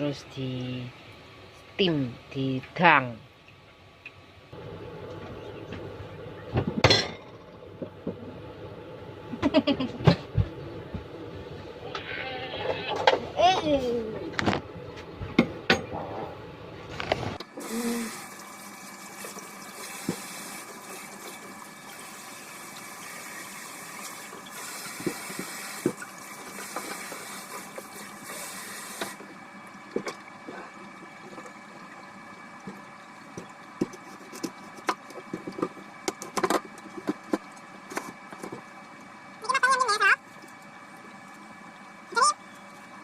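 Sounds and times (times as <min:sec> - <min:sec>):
water running from a tap: 0:17.4 - 0:43.0.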